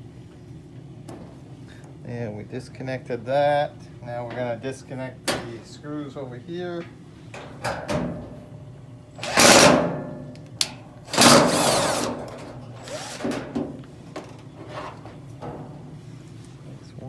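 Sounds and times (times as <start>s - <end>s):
power drill whirring: 9.2s - 9.7s, 11.1s - 13.4s.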